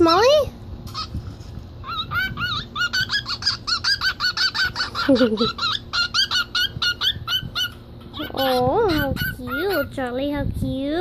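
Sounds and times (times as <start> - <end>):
bird chirping: 1.8 - 10.1.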